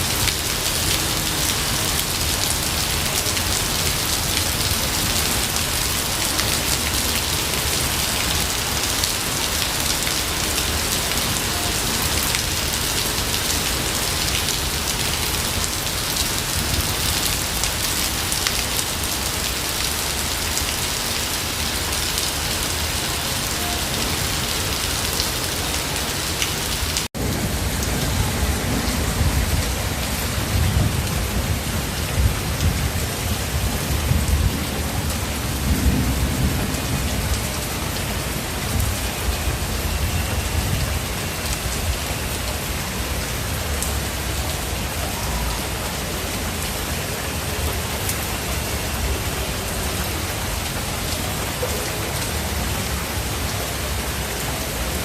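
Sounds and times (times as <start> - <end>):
heavy rain falling: 0.0 - 55.0
low rumble of thunder: 27.1 - 41.0.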